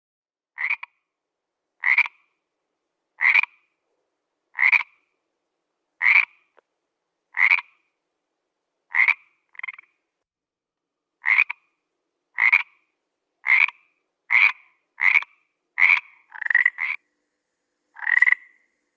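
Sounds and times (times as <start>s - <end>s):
frog croaking: 0.6s - 1.0s, 1.8s - 2.3s, 3.2s - 3.6s, 4.6s - 5.0s, 6.0s - 6.5s, 7.4s - 7.8s, 8.9s - 9.9s, 11.2s - 11.7s, 12.4s - 12.8s, 13.4s - 17.0s, 18.0s - 18.6s.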